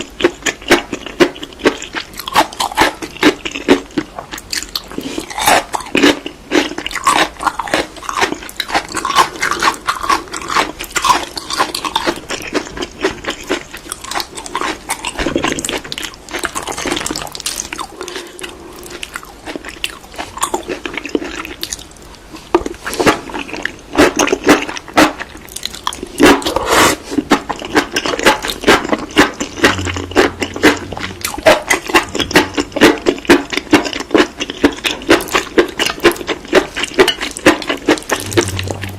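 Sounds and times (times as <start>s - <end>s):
crunchy chewing of seaweed: 0.0s - 38.9s.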